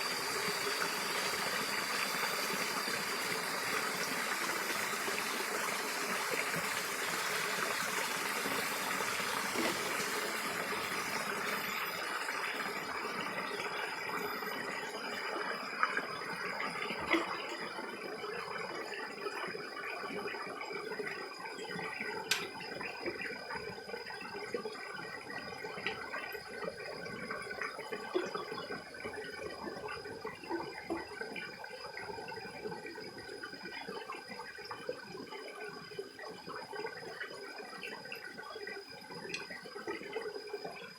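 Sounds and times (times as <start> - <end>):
stream water rushing: 0.0 - 14.6
small clicks: 22.3 - 22.6.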